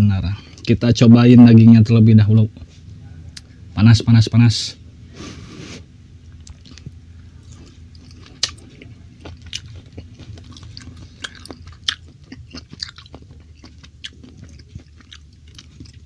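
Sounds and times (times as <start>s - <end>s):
steady low hum: 0.0s - 16.0s
close-up chewing: 6.3s - 16.0s.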